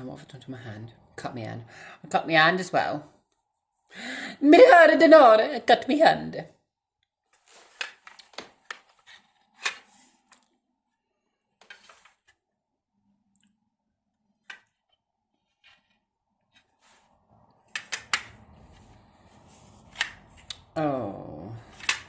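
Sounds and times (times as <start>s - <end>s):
rustling: 7.3s - 10.6s.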